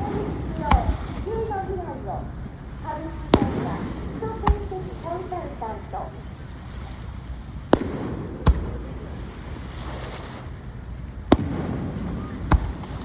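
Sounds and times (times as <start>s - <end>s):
fireworks bangs with rumbling echo: 0.0s - 2.3s, 3.2s - 5.8s, 7.6s - 10.0s, 11.2s - 13.0s.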